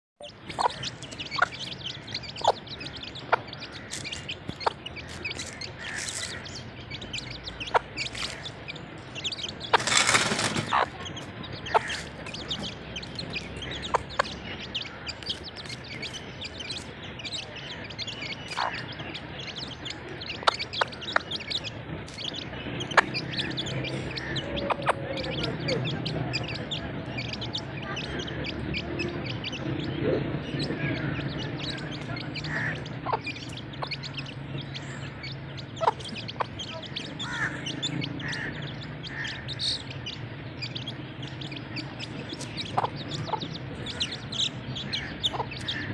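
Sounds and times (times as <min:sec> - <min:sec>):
chicks peeping: 0:00.2 - 0:45.9
hen clucking: 0:00.2 - 0:45.9.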